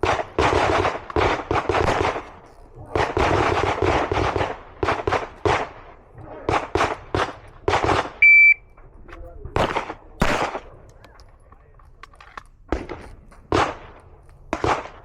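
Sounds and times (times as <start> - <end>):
pistol shots with echo: 0.0 - 8.6, 9.6 - 11.0, 12.6 - 15.0
shot timer beep: 8.2 - 8.7.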